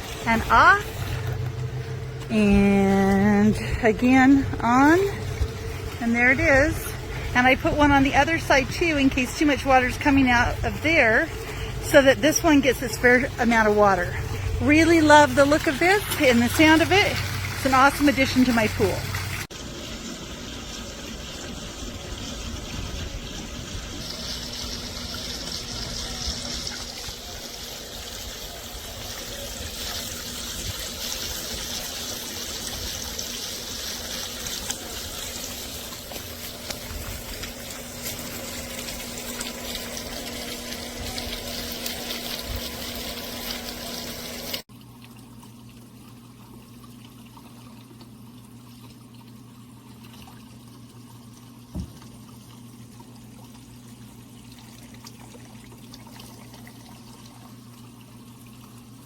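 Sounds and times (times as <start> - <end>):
low hum: 0.0 - 27.6
water pouring into pool: 3.4 - 59.0.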